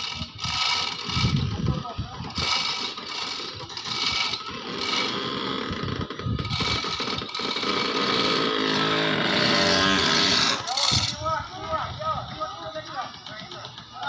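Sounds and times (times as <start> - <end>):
small engine revving: 0.0 - 11.2.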